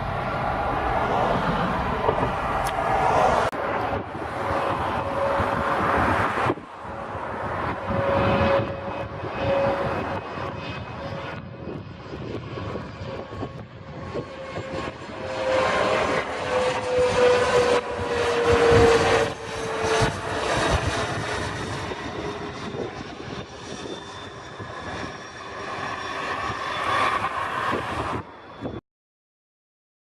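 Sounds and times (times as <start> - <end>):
jet engines passing overhead: 0.0 - 28.8.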